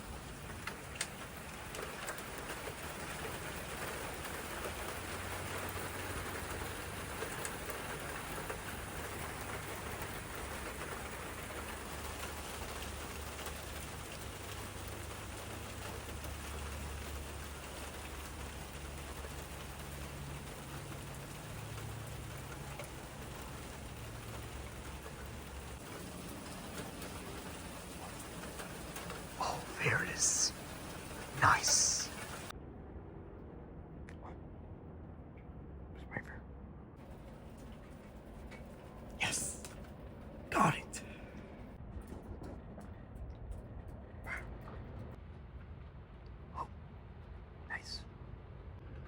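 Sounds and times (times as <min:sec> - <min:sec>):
heavy rain falling: 0:00.0 - 0:32.5, 0:37.0 - 0:41.6
raindrops striking close by: 0:00.0 - 0:32.5, 0:37.0 - 0:47.9.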